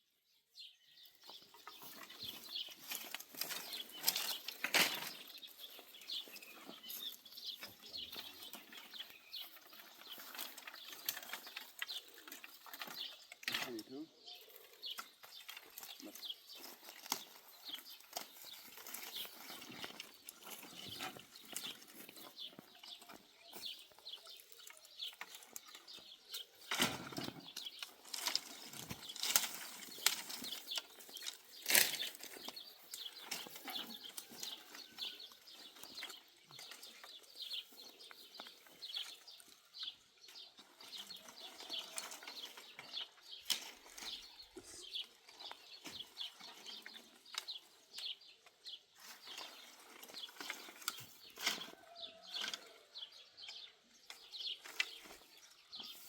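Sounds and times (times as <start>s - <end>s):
rustling: 1.5s - 13.6s, 14.5s - 39.6s, 49.0s - 52.6s.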